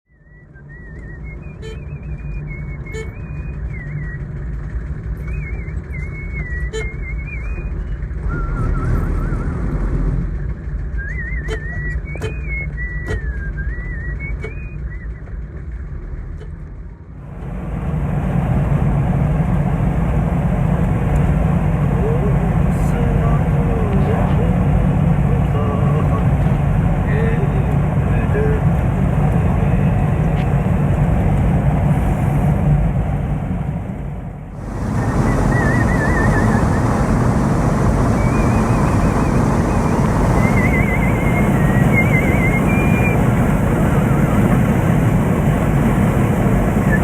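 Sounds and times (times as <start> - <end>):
man whistling a melody: 0.1 - 4.3, 5.2 - 9.8, 10.9 - 15.2, 34.9 - 37.0, 38.1 - 43.2
road noise: 0.1 - 47.0
vehicle engine rumble: 0.1 - 47.0.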